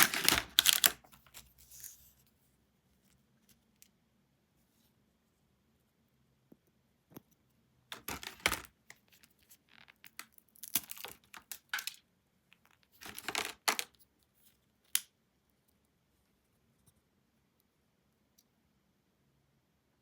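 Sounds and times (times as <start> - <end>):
cookie packaging tearing and crinkling: 0.0 - 2.0, 7.9 - 12.0, 12.6 - 14.0.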